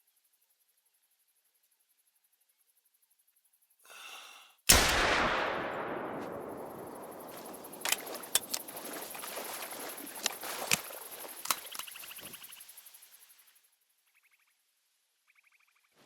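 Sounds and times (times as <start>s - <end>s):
pistol shot: 4.7s - 8.9s
sharp snaps and crackles: 4.7s - 12.6s.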